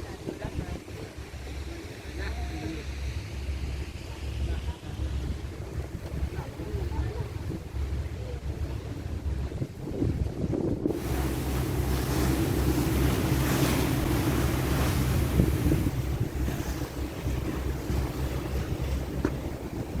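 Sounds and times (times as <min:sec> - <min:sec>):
wind buffeting microphone: 0:05.2 - 0:20.0
boat engine drone: 0:10.9 - 0:20.0
water rushing past: 0:10.9 - 0:20.0.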